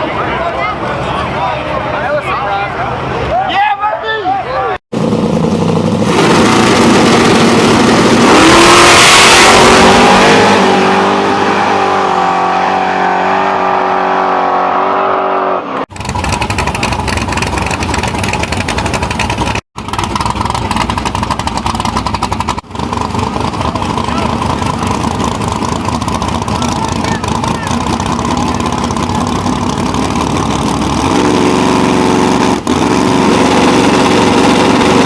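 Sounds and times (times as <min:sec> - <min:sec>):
engine running with rapid firing rhythm: 0:04.9 - 0:10.8, 0:15.9 - 0:35.0
drag race car engine at full throttle: 0:04.9 - 0:35.0.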